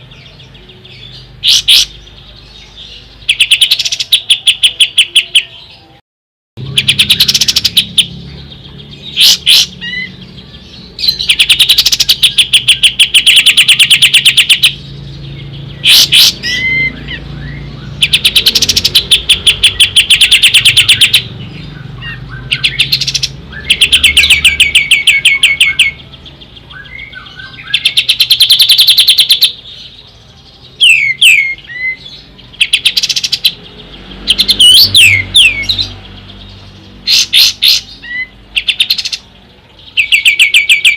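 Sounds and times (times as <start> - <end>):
songbird rapid high notes: 3.0 - 5.6, 6.6 - 29.6, 30.8 - 36.1
swooping bird whistles: 30.8 - 32.0.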